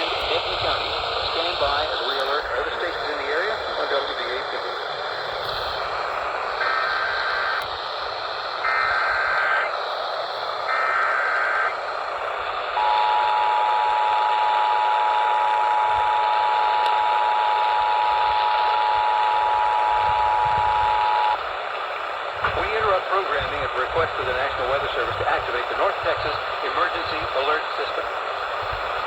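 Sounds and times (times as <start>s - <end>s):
warbling data header bursts: 0.0s - 21.4s
radio hiss: 0.0s - 29.0s
two-tone attention signal: 12.8s - 21.4s.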